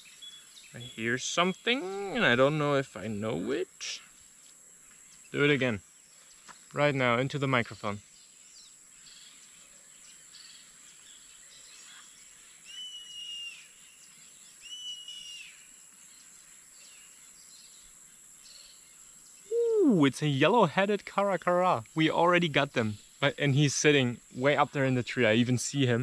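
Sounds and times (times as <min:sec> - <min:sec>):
insects hissing: 0:00.0 - 0:26.0
bird whistled scream: 0:12.7 - 0:13.7, 0:14.6 - 0:15.6.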